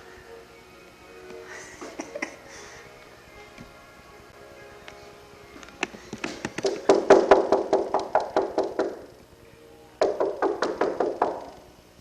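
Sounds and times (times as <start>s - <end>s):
rapid sharp knocking: 6.2s - 9.1s, 10.0s - 11.6s.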